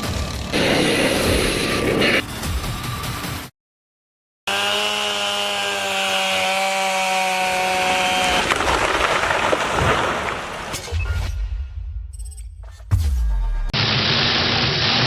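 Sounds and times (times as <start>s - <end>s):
chainsaw cutting wood: 4.5s - 10.3s, 13.8s - 15.0s.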